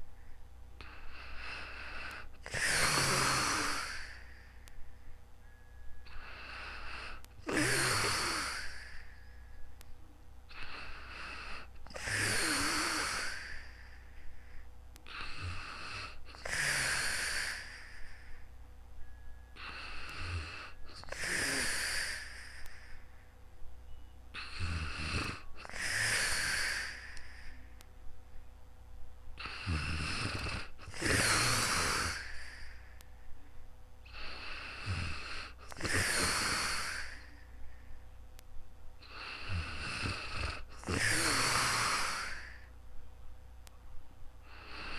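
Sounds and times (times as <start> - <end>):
person snoring: 0.8 - 4.5, 6.0 - 9.4, 10.5 - 14.2, 15.1 - 18.4, 19.6 - 23.0, 24.4 - 27.6, 29.4 - 33.0, 34.1 - 37.7, 39.0 - 42.7, 44.4 - 44.9.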